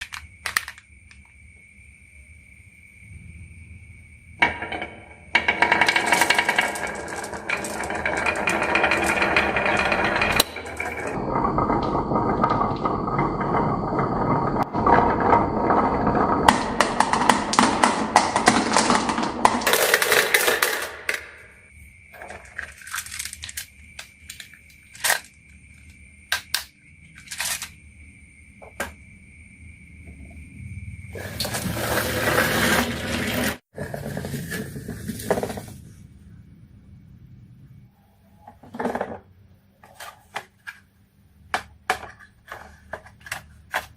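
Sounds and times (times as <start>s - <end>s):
marbles rattling down wooden run: 4.4s - 21.5s
marbles clicking and knocking: 4.4s - 21.6s.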